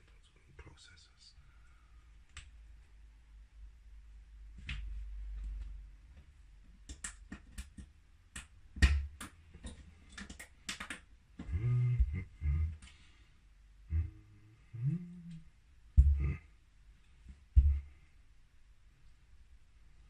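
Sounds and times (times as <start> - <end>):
person humming: 11.4 - 13.0, 13.9 - 16.6, 17.6 - 18.0
loud knock: 16.0 - 16.4.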